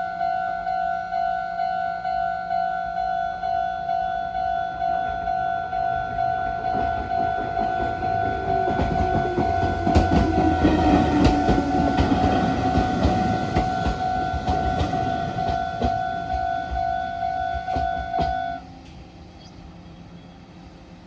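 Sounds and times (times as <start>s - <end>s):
level-crossing alarm ringing: 0.0s - 18.8s
train wheels clacking over joints: 6.5s - 19.0s.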